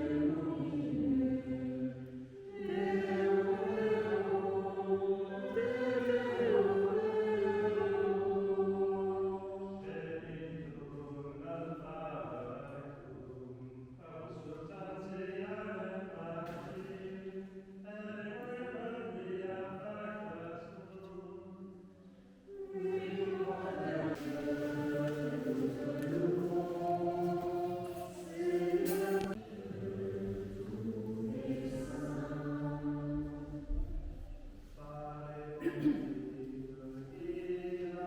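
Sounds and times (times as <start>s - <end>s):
group singing a chant-like hymn: 0.0s - 38.0s.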